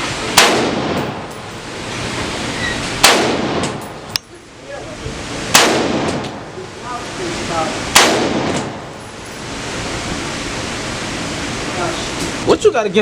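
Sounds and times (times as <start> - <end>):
gunshots with echo: 0.3 - 1.3, 3.0 - 3.8, 5.5 - 6.3, 7.9 - 8.9.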